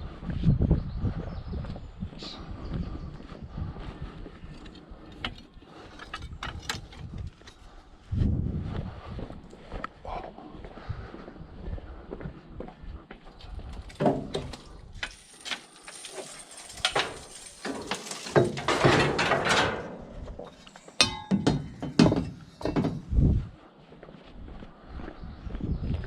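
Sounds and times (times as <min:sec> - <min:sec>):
scrap metal clanking: 0:04.6 - 0:07.6, 0:14.0 - 0:23.1
metal scraping: 0:14.0 - 0:23.1
ringing metal clang: 0:21.0 - 0:23.0.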